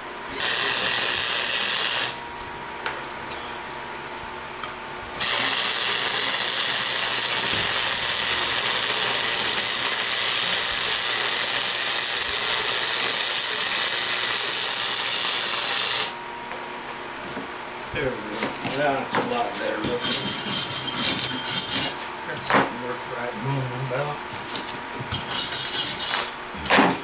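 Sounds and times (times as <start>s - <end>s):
arc welding sizzling hiss: 0.3s - 2.2s, 5.2s - 16.2s.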